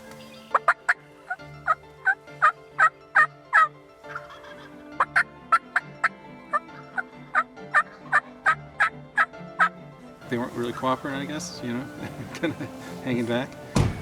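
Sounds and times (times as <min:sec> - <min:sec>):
turkey yelping: 0:01.6 - 0:09.8.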